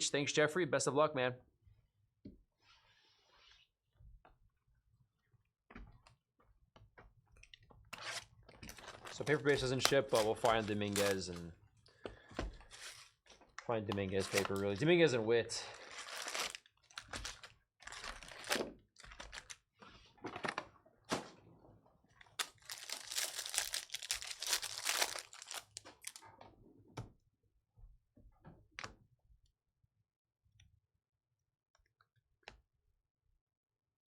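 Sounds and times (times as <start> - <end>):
wrappers tearing and crinkling: 8.0 - 11.4, 14.1 - 14.8, 15.6 - 19.6, 22.2 - 26.2.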